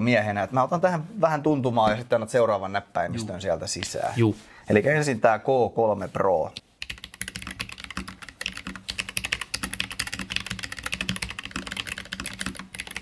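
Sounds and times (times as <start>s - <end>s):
fast mechanical keyboard typing: 6.8s - 13.0s.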